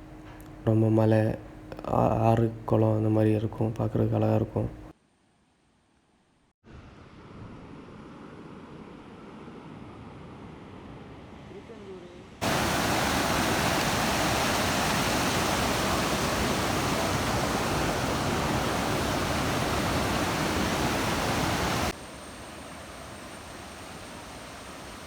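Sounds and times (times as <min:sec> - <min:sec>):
waterfall rushing: 0:12.4 - 0:22.0
steady hiss: 0:12.4 - 0:25.0.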